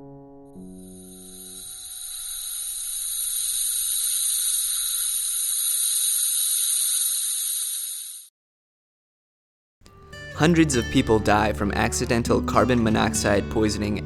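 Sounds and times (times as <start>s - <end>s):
high hiss with whistling tones: 0.7s - 8.3s.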